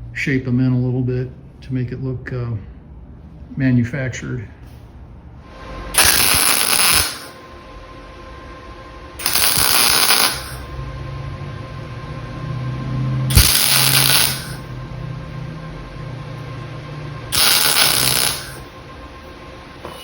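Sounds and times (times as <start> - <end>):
steady low hum: 0.0 - 20.0
arc welding crackling: 6.0 - 7.4, 9.2 - 10.8, 13.3 - 14.8, 17.3 - 20.0.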